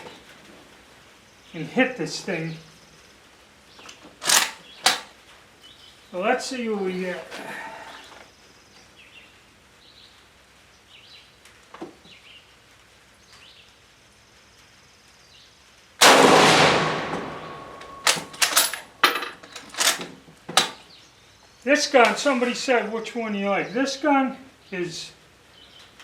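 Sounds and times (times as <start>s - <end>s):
rifle bolt clicking: 4.2s - 5.1s, 16.0s - 18.8s
rifle shot with echo: 16.0s - 18.6s.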